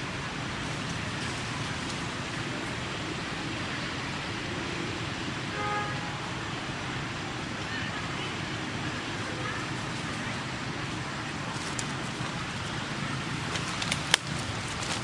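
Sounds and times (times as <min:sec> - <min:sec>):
outdoor hiss and rumble: 0:00.0 - 0:15.0.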